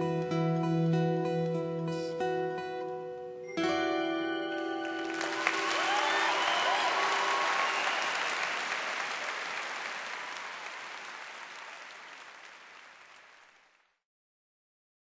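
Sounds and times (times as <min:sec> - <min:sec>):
audience applause: 0:04.8 - 0:13.9.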